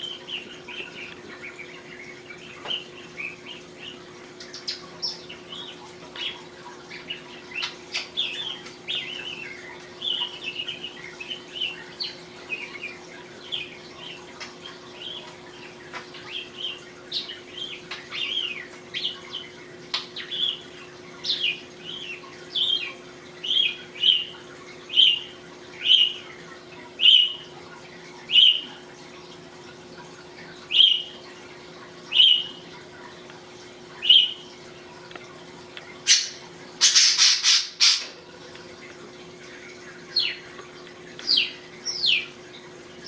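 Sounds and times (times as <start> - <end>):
budgie chirping: 0.0 - 19.2.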